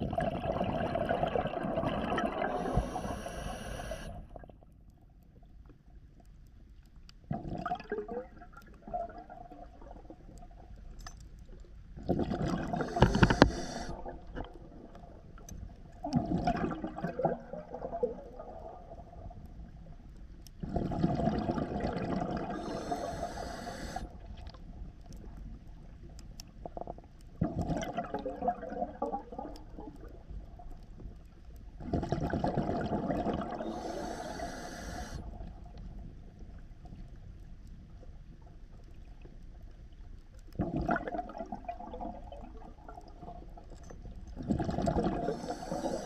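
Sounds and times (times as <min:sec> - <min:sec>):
exhaled bubbles rushing: 0:00.0 - 0:03.1, 0:07.3 - 0:10.2, 0:12.0 - 0:15.2, 0:16.0 - 0:19.1, 0:20.6 - 0:23.2, 0:26.8 - 0:30.2, 0:31.8 - 0:34.2, 0:40.6 - 0:43.5, 0:44.4 - 0:46.0
diver breathing through regulator: 0:02.4 - 0:04.3, 0:12.6 - 0:14.2, 0:22.4 - 0:24.2, 0:33.5 - 0:35.4, 0:44.9 - 0:46.0.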